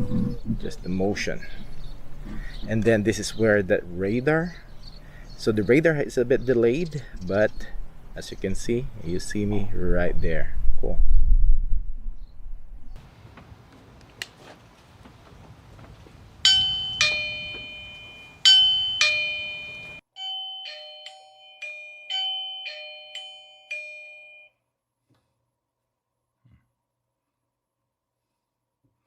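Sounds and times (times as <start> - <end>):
doorbell ding-dong chime: 16.5 - 24.6.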